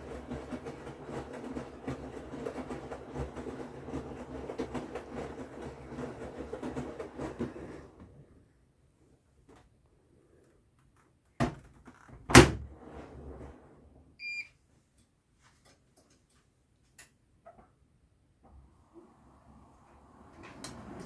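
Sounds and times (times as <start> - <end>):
short electronic beep: 14.2 - 14.5.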